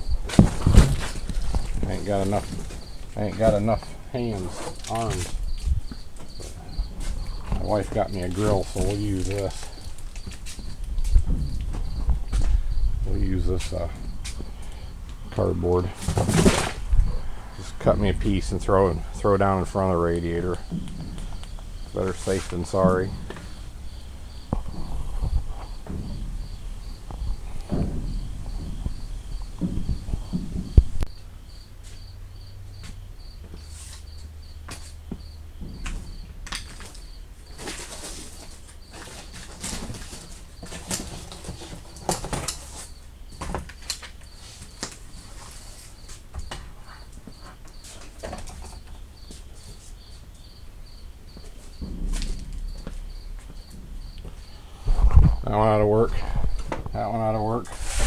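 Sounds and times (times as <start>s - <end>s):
crickets chirping: 0.0s - 58.0s
cardboard rustling and cutting: 0.3s - 3.6s, 16.0s - 17.0s.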